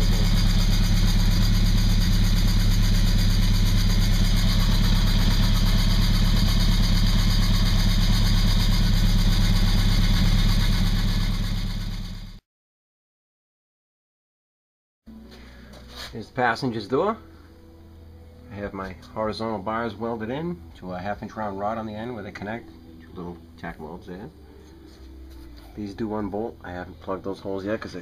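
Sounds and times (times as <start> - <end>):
car engine idling: 0.0 - 12.4.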